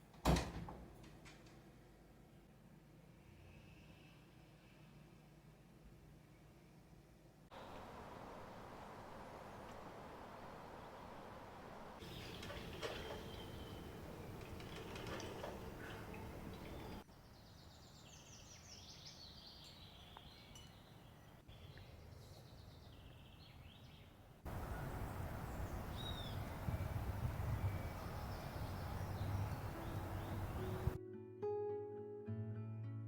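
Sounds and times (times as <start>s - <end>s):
small birds chirping: 12.0s - 31.0s
acoustic guitar music: 29.9s - 33.0s.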